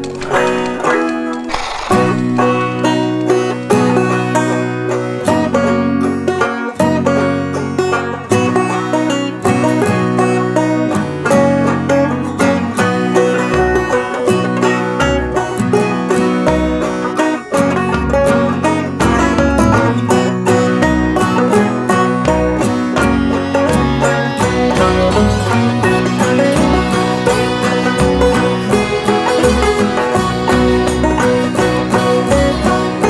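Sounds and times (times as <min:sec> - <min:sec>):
fast plucked-string tune: 0:00.0 - 0:33.0
held low notes: 0:15.0 - 0:33.0.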